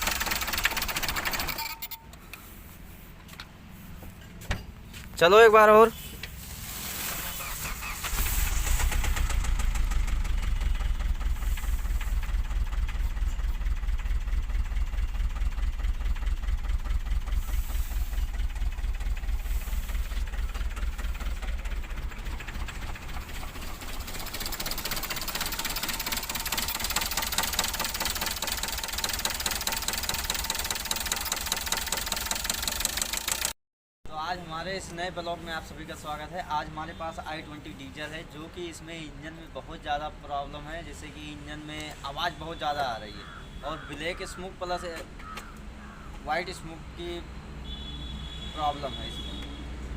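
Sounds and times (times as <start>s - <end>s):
diesel engine knocking heavily: 0.0s - 1.6s, 7.8s - 33.5s
man talking: 5.2s - 6.0s, 34.1s - 45.1s, 46.2s - 47.3s, 48.5s - 49.3s.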